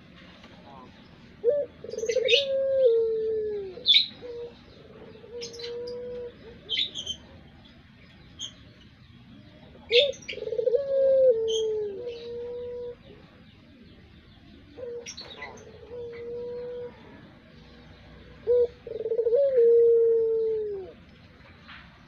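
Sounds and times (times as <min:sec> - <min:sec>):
dove cooing: 0:00.7 - 0:07.4, 0:09.6 - 0:21.1
small bird chirping: 0:03.8 - 0:10.8.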